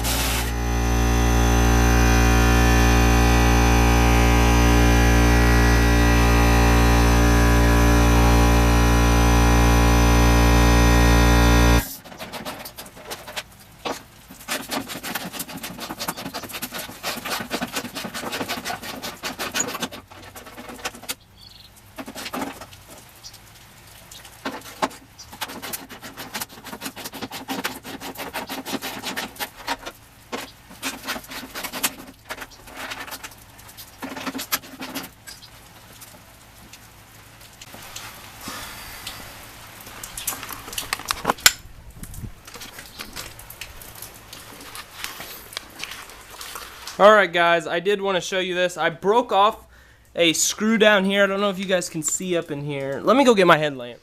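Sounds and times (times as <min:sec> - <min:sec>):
loud machine drone: 0:00.0 - 0:11.9.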